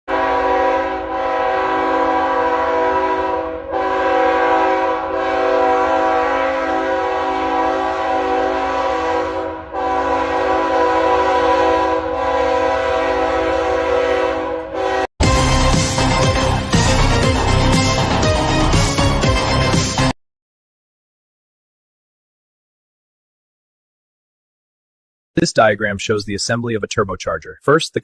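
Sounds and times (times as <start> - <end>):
train horn blasts: 0.1 - 18.7.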